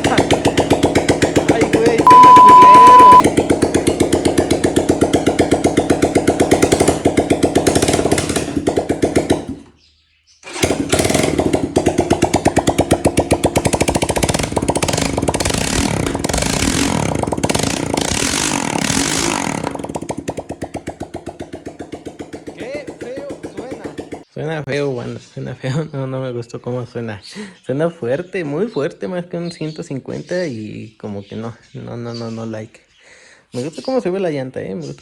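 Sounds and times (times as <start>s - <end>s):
motorcycle engine without exhaust: 0.0s - 24.3s.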